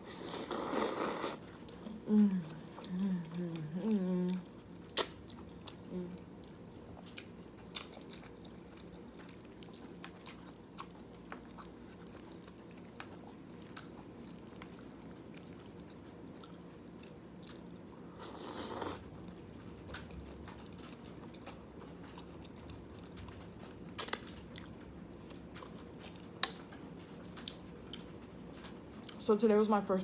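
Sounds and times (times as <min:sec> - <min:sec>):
soft chewing: 0:00.1 - 0:29.3
small mouth clicks: 0:05.0 - 0:05.2.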